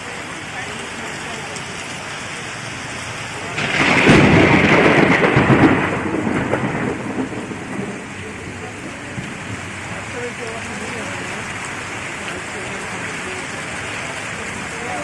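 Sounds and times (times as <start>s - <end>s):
heavy rain falling: 0.0s - 15.0s
thunder clap and rumble: 3.2s - 12.9s.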